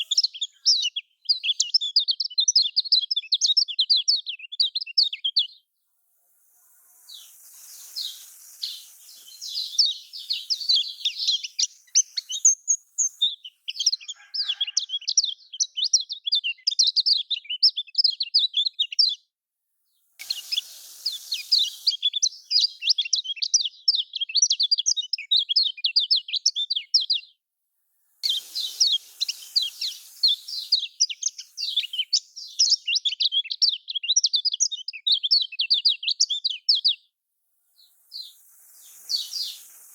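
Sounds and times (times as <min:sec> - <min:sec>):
bird twittering chatter: 0:00.0 - 0:05.5, 0:06.6 - 0:16.0, 0:20.2 - 0:24.6, 0:28.2 - 0:36.9, 0:37.8 - 0:39.9.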